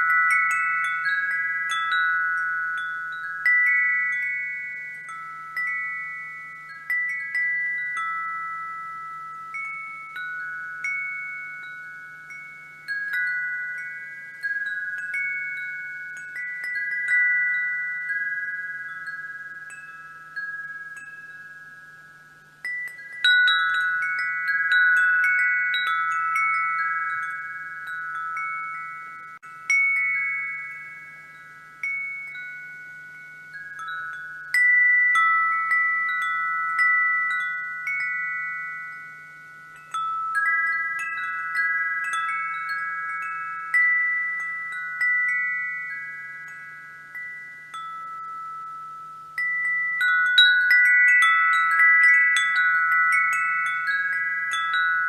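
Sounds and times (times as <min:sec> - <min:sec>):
wind chimes ringing: 0:00.0 - 0:55.0.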